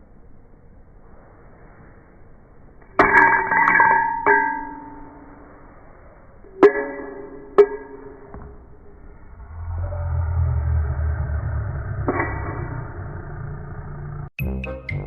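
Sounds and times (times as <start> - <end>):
low rumble: 7.4 - 14.4.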